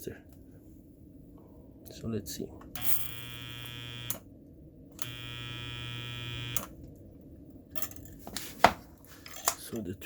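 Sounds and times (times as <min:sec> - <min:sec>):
spot welder buzzing: 0:02.8 - 0:04.2, 0:05.0 - 0:06.7.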